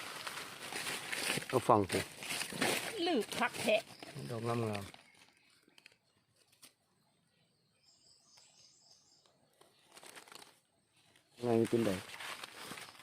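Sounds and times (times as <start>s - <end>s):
distant bird chirps: 3.0s - 13.0s.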